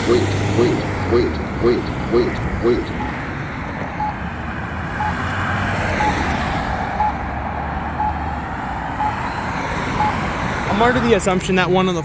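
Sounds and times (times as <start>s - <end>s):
pedestrian signal beeps: 0.0s - 3.4s, 4.0s - 4.2s, 5.0s - 5.2s, 5.9s - 6.3s, 7.0s - 7.2s, 8.0s - 8.3s, 9.0s - 9.3s, 10.0s - 10.9s, 11.8s - 12.0s
road traffic: 0.0s - 12.0s.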